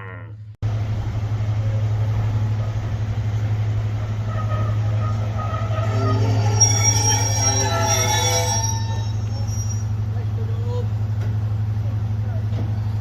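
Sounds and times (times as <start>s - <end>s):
train rumbling on track: 0.6s - 13.0s
train wheel squeal: 3.4s - 11.0s.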